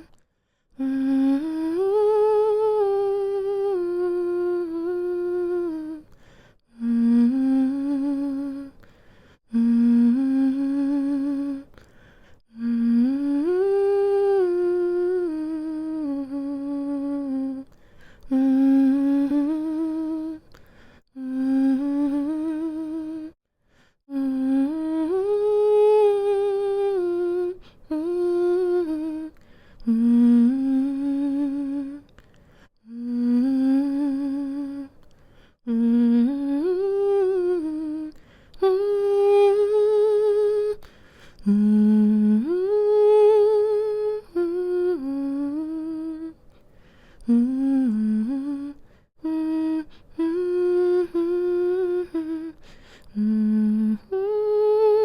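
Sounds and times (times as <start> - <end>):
woman humming a lullaby: 41.4 - 46.4, 47.2 - 55.0.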